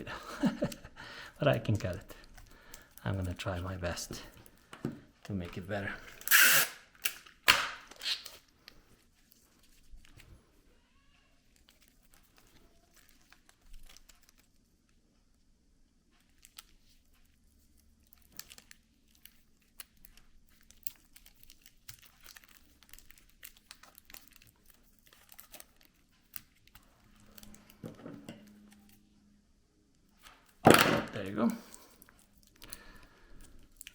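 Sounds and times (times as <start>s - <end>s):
plastic wrapping crinkling: 0.3s - 6.3s, 6.9s - 14.9s, 16.1s - 29.1s, 30.1s - 33.9s.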